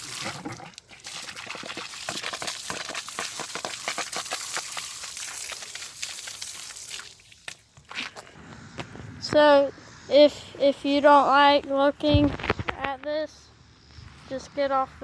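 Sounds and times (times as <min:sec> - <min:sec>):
water spraying onto fish: 0:01.1 - 0:07.5.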